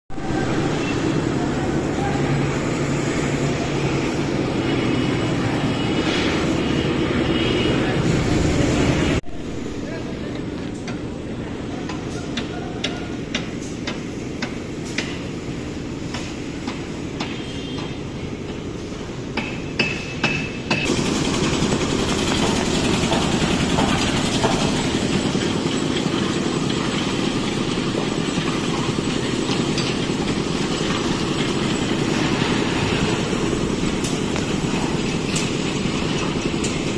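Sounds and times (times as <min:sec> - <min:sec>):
engine drone: 0:00.1 - 0:12.2, 0:20.8 - 0:36.9
loud noisy machine: 0:00.1 - 0:13.3, 0:20.7 - 0:36.9.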